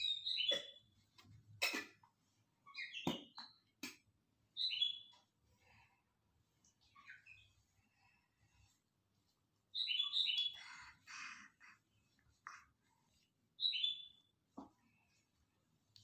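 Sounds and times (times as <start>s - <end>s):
bird chirping: 0.0s - 1.0s, 2.6s - 3.7s, 4.5s - 5.3s, 6.8s - 7.6s, 9.7s - 11.4s, 13.6s - 14.3s
rough bird calls: 0.0s - 1.0s, 9.7s - 11.9s.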